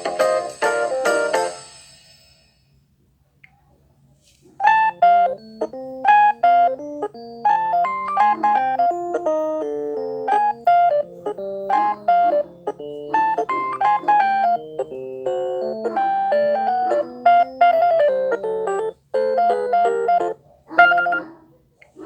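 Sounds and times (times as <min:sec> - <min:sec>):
electronic phone ringtone melody: 0:04.6 - 0:21.2.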